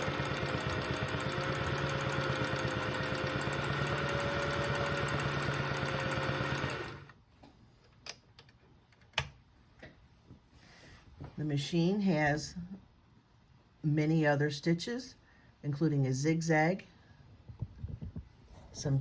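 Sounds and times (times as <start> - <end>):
sewing machine stitching: 0.0 - 7.1.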